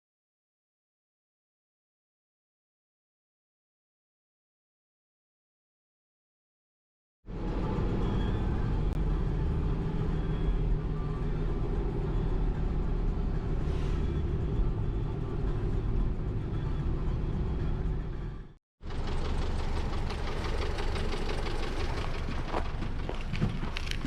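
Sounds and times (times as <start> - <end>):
vehicle engine and road noise: 7.3 - 24.0.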